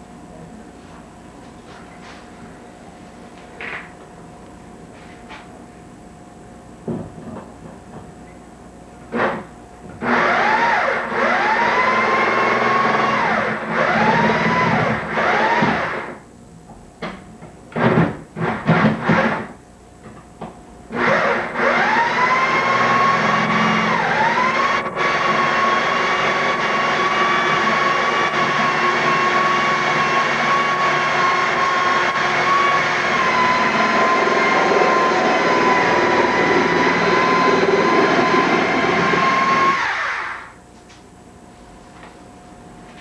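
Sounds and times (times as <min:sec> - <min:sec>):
electric motor high whine: 0:10.0 - 0:16.2, 0:20.9 - 0:40.6.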